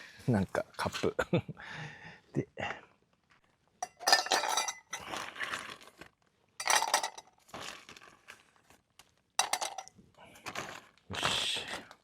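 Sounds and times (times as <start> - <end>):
ice cubes clinking in a cup: 3.8 - 5.1, 6.6 - 8.1, 9.4 - 9.9.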